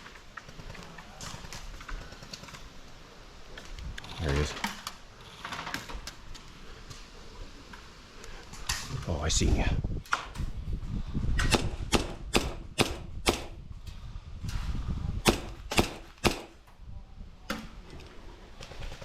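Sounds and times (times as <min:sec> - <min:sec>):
airsoft gun shots: 0:11.4 - 0:13.6, 0:15.2 - 0:16.6.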